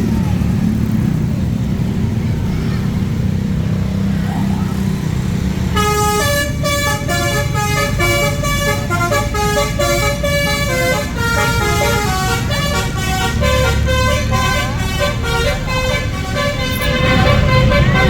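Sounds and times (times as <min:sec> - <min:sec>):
bus engine running: 0:00.0 - 0:18.0
musical bus horn tune: 0:05.7 - 0:18.0.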